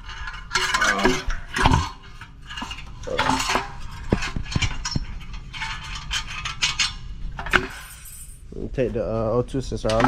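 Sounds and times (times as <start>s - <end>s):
metal parts and tools clanking: 0.0s - 8.4s.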